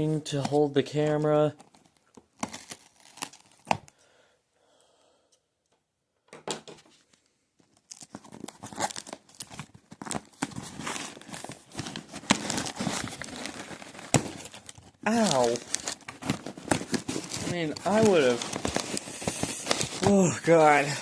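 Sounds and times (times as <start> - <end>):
packaging tearing and crinkling: 1.6 - 3.9, 7.7 - 21.0.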